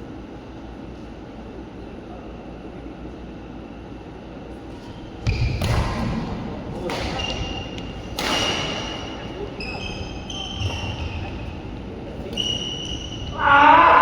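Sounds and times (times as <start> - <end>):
shoes squeaking on court floor: 4.8 - 6.2, 6.8 - 13.4
racket hitting shuttlecock: 5.2 - 9.3.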